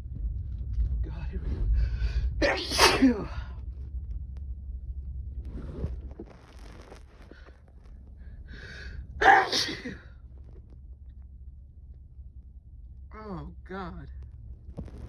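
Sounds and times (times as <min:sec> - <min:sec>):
quiet breathing: 0:01.4 - 0:02.4, 0:07.2 - 0:09.2
sharp intake of breath: 0:02.4 - 0:03.1
man sneezing: 0:02.4 - 0:03.2, 0:09.2 - 0:10.0.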